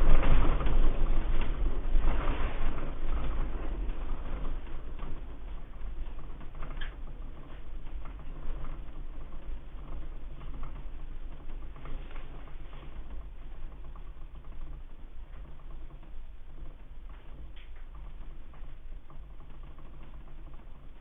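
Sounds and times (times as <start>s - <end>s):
household objects rattling and creaking: 0.0s - 21.0s
low rumble: 0.0s - 21.0s.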